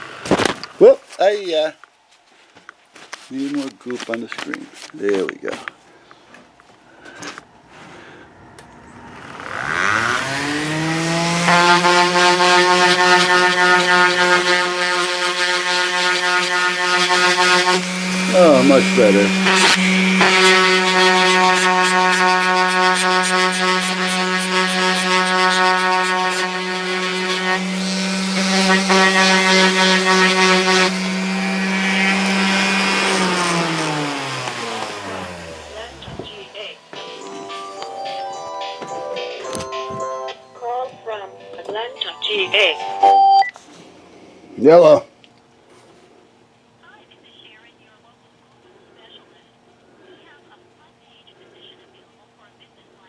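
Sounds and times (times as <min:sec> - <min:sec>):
rotary tool whining: 0:08.6 - 0:35.7
buffing wheel rubbing: 0:09.0 - 0:35.8.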